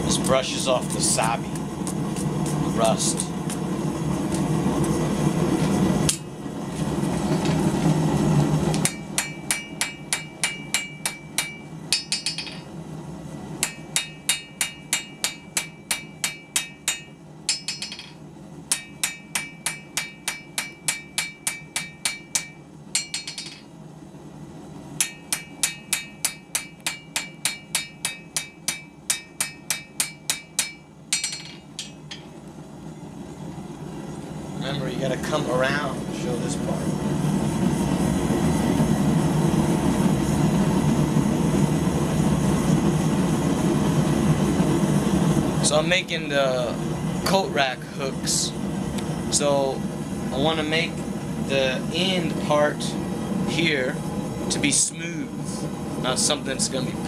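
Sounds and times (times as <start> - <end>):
hammer striking steel on anvil: 8.8 - 12.7, 13.6 - 23.7, 25.0 - 32.4.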